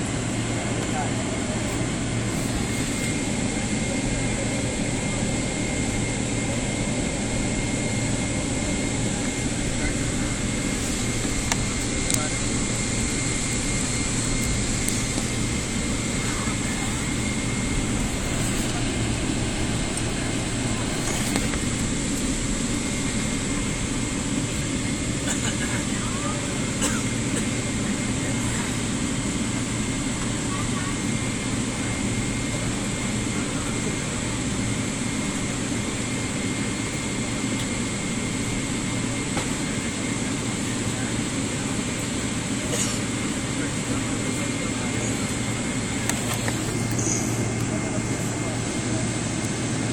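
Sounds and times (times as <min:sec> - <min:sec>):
faint steady whine: 0:00.0 - 0:49.9
jet engine cabin rush: 0:00.0 - 0:49.9
faint high whine: 0:43.5 - 0:49.9.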